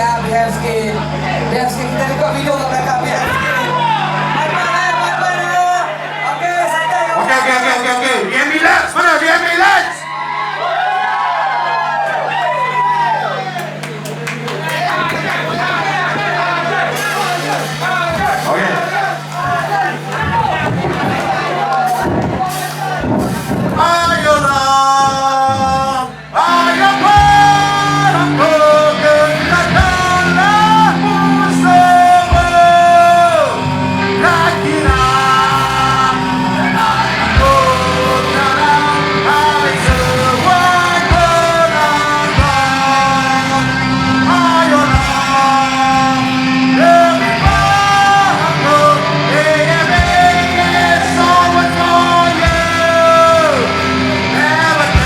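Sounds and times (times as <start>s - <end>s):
punk rock band playing: 0.0s - 6.2s, 13.6s - 55.0s
distorted electric guitars: 0.0s - 10.5s, 11.4s - 55.0s
drums: 12.1s - 55.0s
sung vocals: 14.8s - 55.0s.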